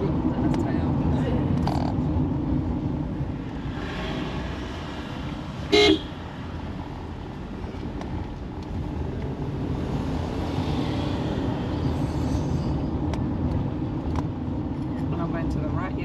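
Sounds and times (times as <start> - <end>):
car engine and road noise: 0.0 - 16.0
car horn toot: 5.7 - 6.2.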